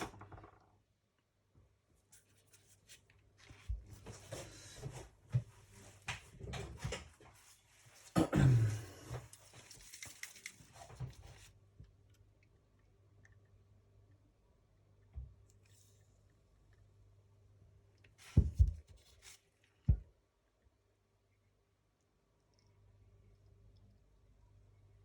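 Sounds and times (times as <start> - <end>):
metal parts clicking and scraping: 9.3 - 10.8.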